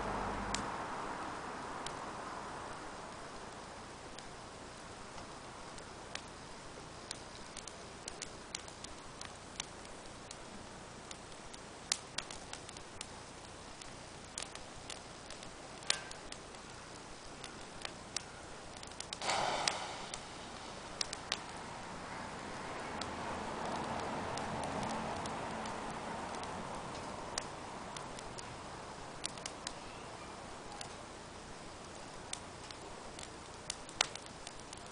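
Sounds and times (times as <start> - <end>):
fire crackling and popping: 0.0 - 34.9
low hiss of fire: 0.0 - 34.9
short rush of noise: 19.2 - 21.8.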